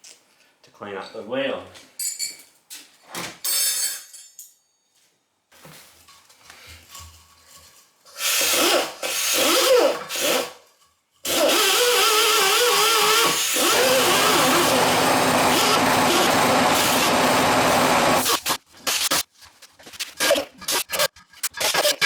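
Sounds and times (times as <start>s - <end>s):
handheld power tool cleaning metal: 8.2s - 10.6s, 11.2s - 19.3s.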